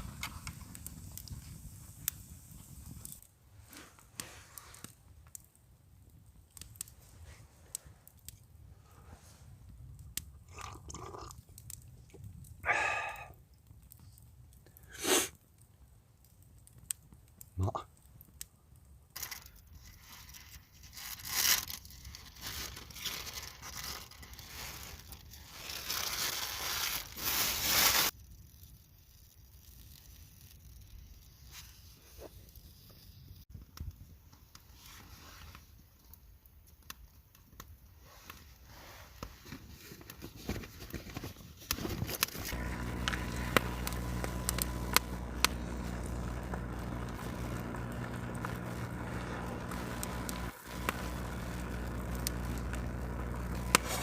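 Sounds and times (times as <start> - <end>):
crinkling handling noises: 19.2 - 28.1, 38.0 - 44.9
low hum with high whine: 42.5 - 54.0.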